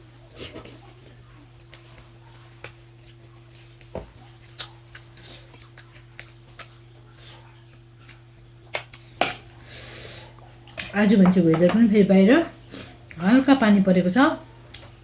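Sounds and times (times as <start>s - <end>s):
low steady hum: 0.0s - 15.0s
chewing smacks: 0.4s - 9.4s.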